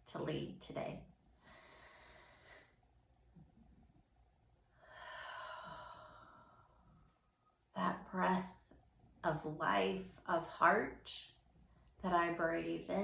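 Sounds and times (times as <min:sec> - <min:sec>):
woman breathing in: 0:01.4 - 0:02.8, 0:04.8 - 0:07.2.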